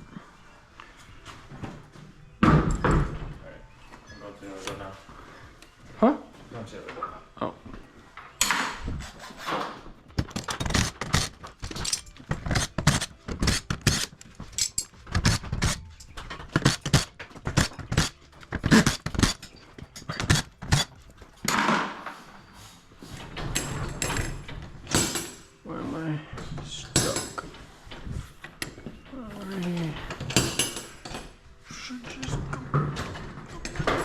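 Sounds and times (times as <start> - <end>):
metal tools clanking: 8.2 - 25.6.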